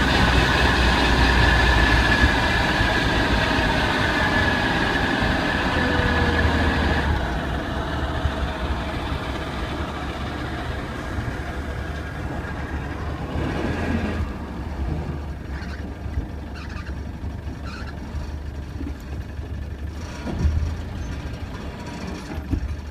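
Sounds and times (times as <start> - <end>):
high whine: 0.0 - 15.6
car engine low drone: 0.0 - 22.9.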